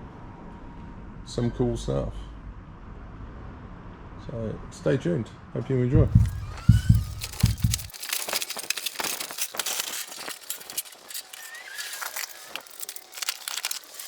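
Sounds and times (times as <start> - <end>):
clatter of light knocks: 6.0 - 14.0.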